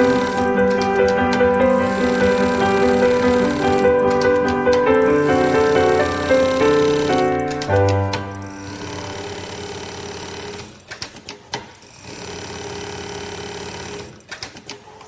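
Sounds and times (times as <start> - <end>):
sewing machine stitching: 8.7 - 15.0.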